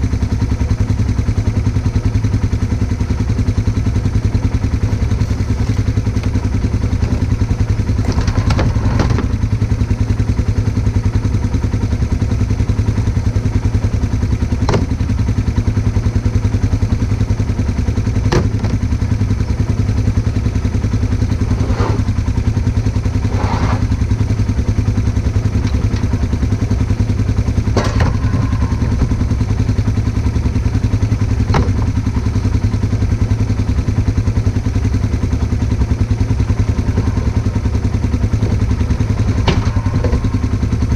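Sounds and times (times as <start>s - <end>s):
engine running steadily: 0.0s - 40.9s
sharp clanks and knocks: 5.4s - 10.3s, 14.6s - 15.2s, 18.2s - 19.4s, 25.4s - 32.8s, 36.2s - 40.9s.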